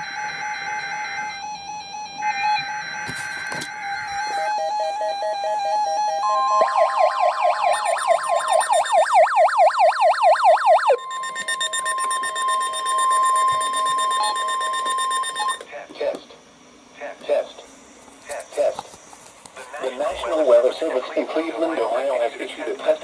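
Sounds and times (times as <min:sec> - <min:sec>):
music: 0:00.0 - 0:07.4, 0:11.0 - 0:15.6
siren-like warble: 0:00.0 - 0:15.6
steady alert tone: 0:10.8 - 0:15.6.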